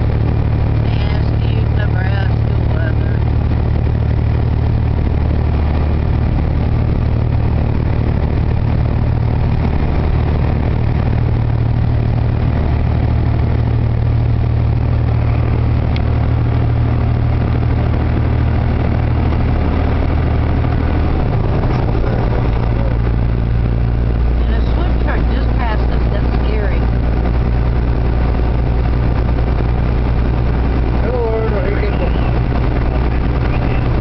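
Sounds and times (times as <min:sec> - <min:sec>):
vehicle engine droning: 0:00.0 - 0:34.0.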